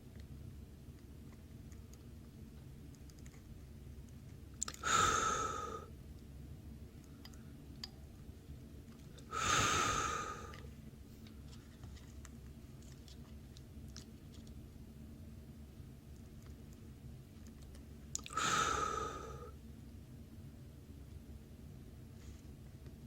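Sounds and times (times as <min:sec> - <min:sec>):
rushing hissing air bursts: 0:09.3 - 0:10.5.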